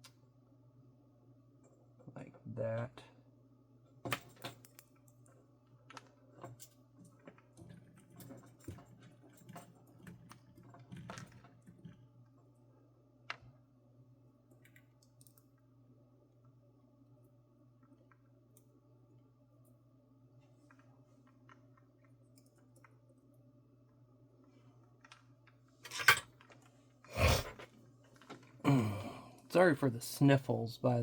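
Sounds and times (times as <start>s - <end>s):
small parts clicking and tapping: 4.0s - 12.5s, 14.5s - 15.7s, 20.4s - 26.8s.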